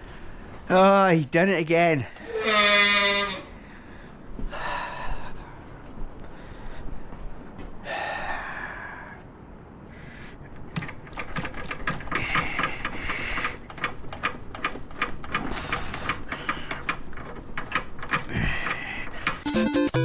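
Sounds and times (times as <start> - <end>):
mechanical clicking and clatter: 10.7 - 19.5
music: 19.4 - 20.0.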